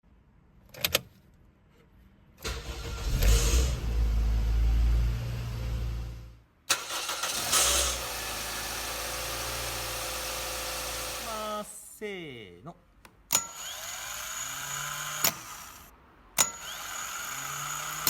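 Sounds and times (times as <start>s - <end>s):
engine cranking and running: 2.4s - 11.5s.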